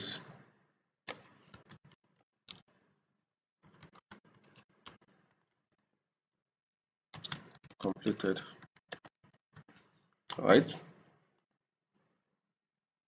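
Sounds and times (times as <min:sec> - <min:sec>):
computer keyboard keystrokes: 0:01.1 - 0:02.7, 0:03.6 - 0:05.1, 0:07.2 - 0:08.2.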